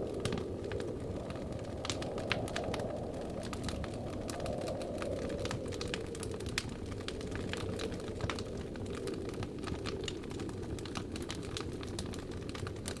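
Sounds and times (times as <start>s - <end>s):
low rushing of fire: 0.0s - 13.0s
wood fire crackling and popping: 0.0s - 13.0s.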